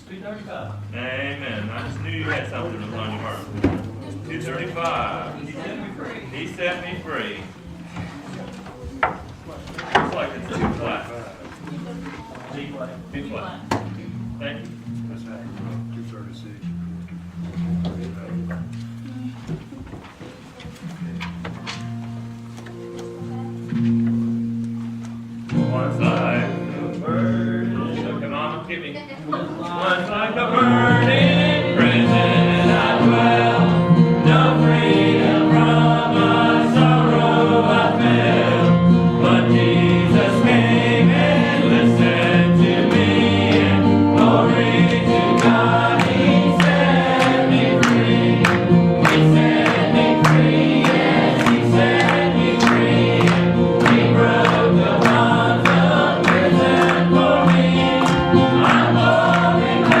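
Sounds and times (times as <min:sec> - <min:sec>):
congregation singing a hymn: 0:00.9 - 0:14.2, 0:29.6 - 1:00.0
instrumental accompaniment with steady beat: 0:31.0 - 1:00.0.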